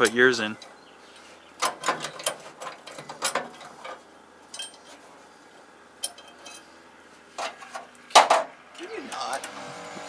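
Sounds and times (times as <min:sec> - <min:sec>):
light metal clinks of tools: 0:02.0 - 0:05.0, 0:06.0 - 0:06.7.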